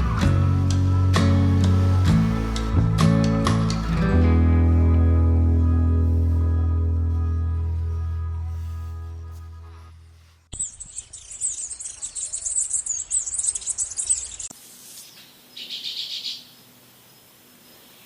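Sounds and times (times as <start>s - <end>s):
background music: 0.0s - 10.0s
high-pitched bird chirping: 10.5s - 14.5s
rapid bird trill: 10.5s - 14.5s.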